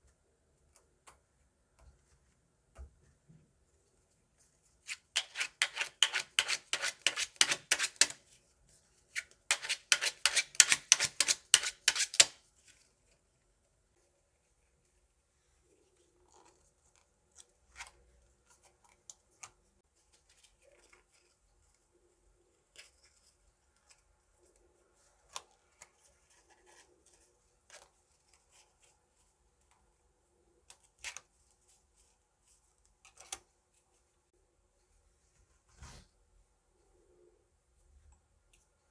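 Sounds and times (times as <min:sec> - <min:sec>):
cards rubbing and sliding: 0:04.8 - 0:08.2, 0:09.1 - 0:12.4.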